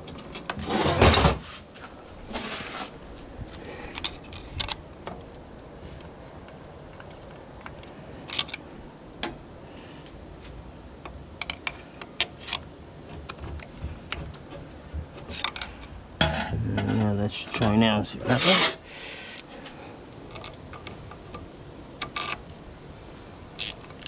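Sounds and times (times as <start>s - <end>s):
steady hiss: 0.0s - 24.0s
small tools clicking and tapping: 11.0s - 15.9s.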